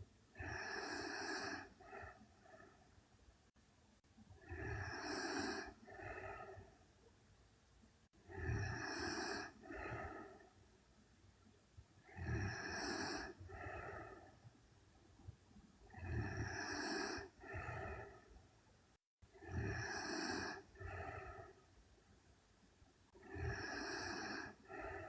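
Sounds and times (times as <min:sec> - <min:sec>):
woman snoring: 0:00.4 - 0:02.7, 0:04.4 - 0:06.8, 0:08.3 - 0:10.4, 0:12.0 - 0:14.3, 0:15.9 - 0:18.2, 0:19.3 - 0:21.6, 0:23.2 - 0:25.0.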